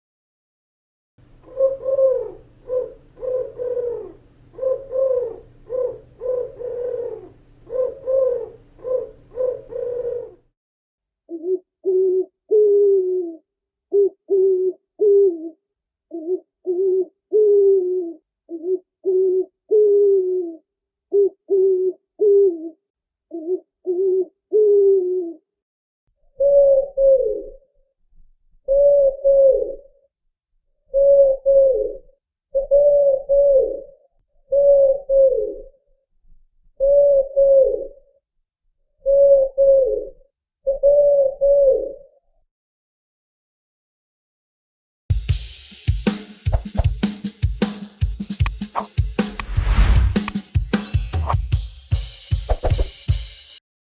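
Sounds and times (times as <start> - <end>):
owl hooting: 1.3 - 10.5, 11.3 - 25.4, 26.3 - 27.7, 28.6 - 29.9, 30.9 - 35.8, 36.8 - 38.0, 39.0 - 42.2.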